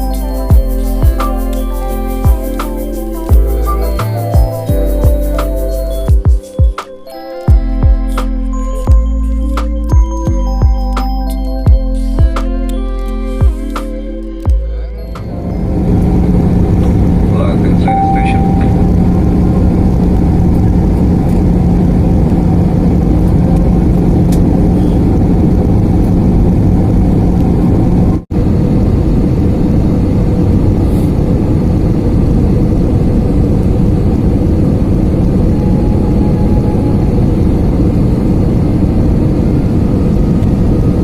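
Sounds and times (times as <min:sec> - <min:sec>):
jet airliner cabin noise: 0:14.4 - 0:41.0.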